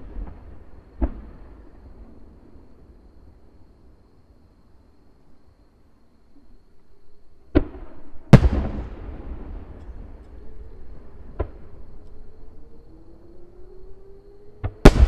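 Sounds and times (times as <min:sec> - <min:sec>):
fireworks bursting: 0:07.6 - 0:10.3, 0:14.6 - 0:15.0.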